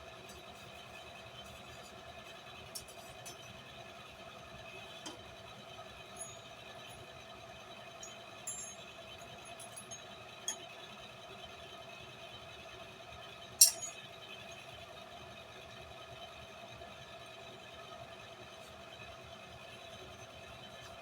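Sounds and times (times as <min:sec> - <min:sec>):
metal tool clinking on anvil: 0:08.5 - 0:08.9, 0:13.6 - 0:14.0
steady hum: 0:13.6 - 0:14.0.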